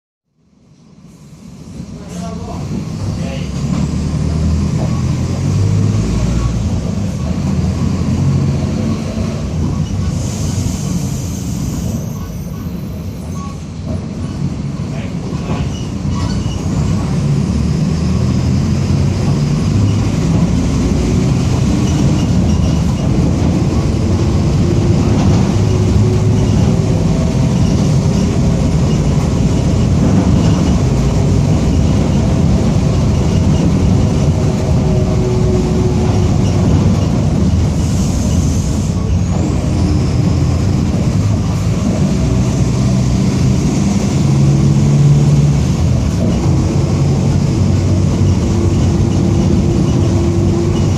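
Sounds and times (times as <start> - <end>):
bus diesel engine running: 0.4 - 50.9.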